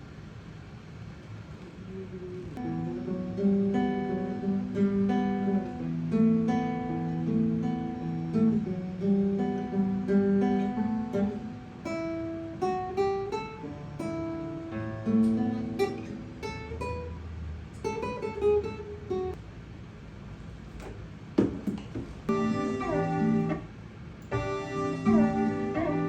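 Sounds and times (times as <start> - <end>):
plucked guitar-like notes: 2.6 - 17.1, 22.3 - 26.0.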